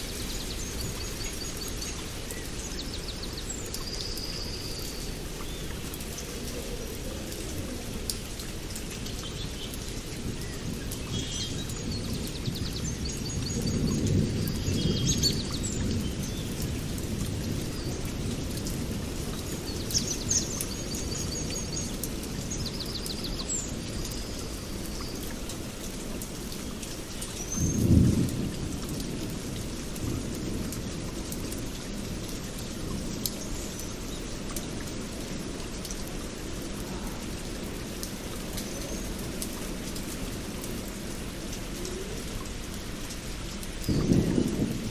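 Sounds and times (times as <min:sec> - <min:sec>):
steady rain: 0:00.0 - 0:44.9
thunder rumbling: 0:10.2 - 0:21.4, 0:24.7 - 0:31.7, 0:43.8 - 0:44.9
birds chirping: 0:37.8 - 0:41.2.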